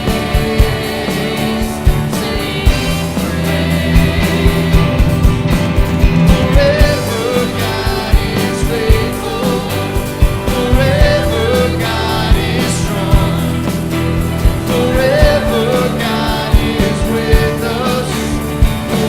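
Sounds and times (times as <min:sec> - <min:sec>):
drums keeping a beat: 0:00.0 - 0:19.0
live band playing: 0:00.0 - 0:19.0
person singing: 0:06.2 - 0:13.9, 0:14.6 - 0:19.0.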